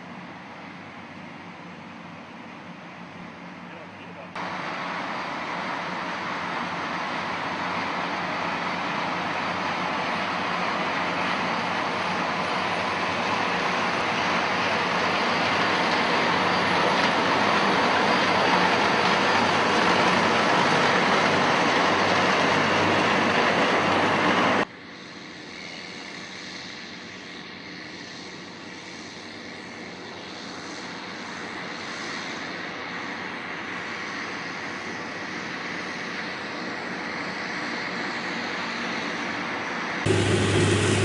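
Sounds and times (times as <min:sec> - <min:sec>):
tractor engine running: 0:40.1 - 0:41.0.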